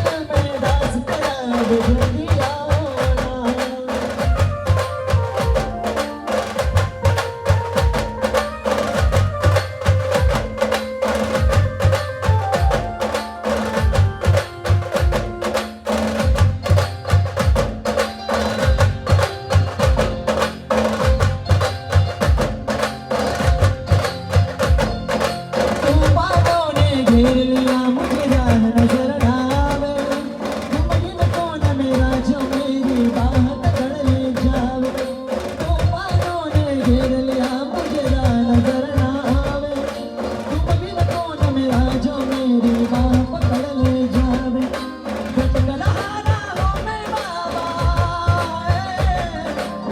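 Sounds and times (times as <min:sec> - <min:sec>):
drums beating dense rhythm: 0:00.0 - 0:49.9
bending lead melody: 0:04.2 - 0:34.8.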